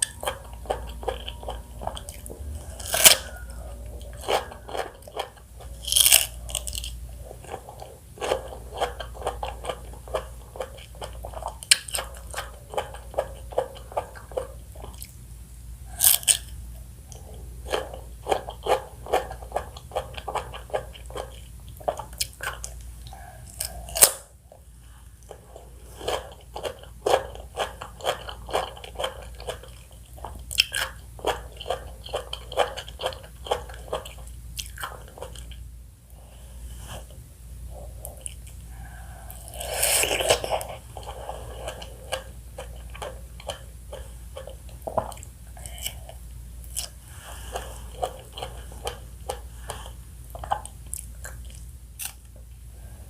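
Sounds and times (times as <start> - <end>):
wet chewing: 0.0 - 15.2, 15.9 - 24.6, 25.2 - 35.7, 37.7 - 52.4
crunchy fruit bites: 2.0 - 13.4, 50.4 - 52.4.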